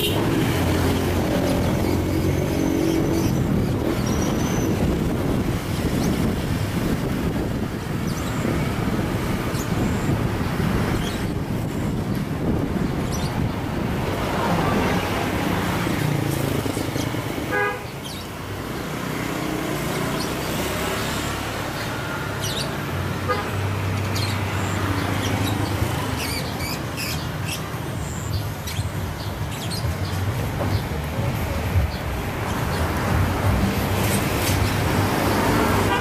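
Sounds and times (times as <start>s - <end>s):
vehicle horn toot: 0.0s - 0.3s, 17.5s - 17.9s
road traffic rumbling: 0.0s - 36.0s.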